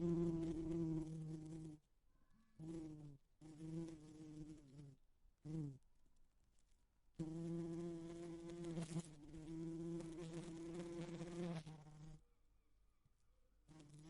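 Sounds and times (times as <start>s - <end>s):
bee buzzing against window: 0.0s - 1.8s, 2.6s - 5.8s, 7.2s - 12.2s, 13.7s - 14.0s.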